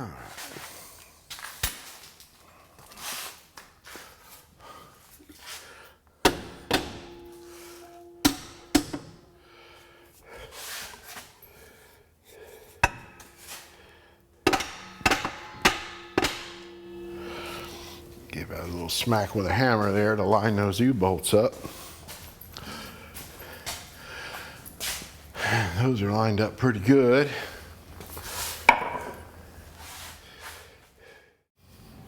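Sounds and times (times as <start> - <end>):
hammer striking steel: 6.3 - 9.6, 12.8 - 20.2, 28.7 - 29.3.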